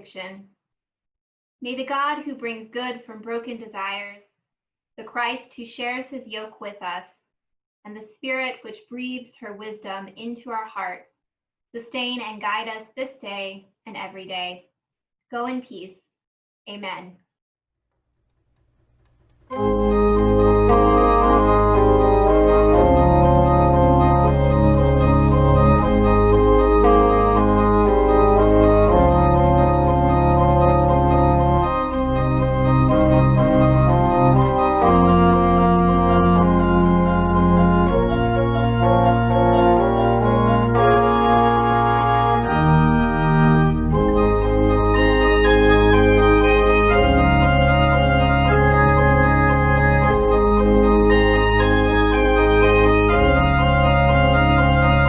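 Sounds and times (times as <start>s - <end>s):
organ playing sustained chords: 19.4s - 55.0s.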